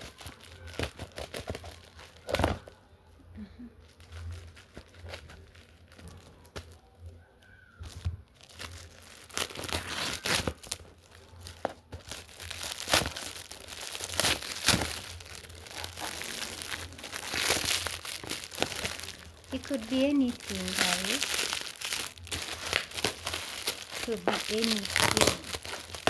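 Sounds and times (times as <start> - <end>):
gift wrap tearing and crinkling: 0.0 - 2.8, 3.4 - 26.0.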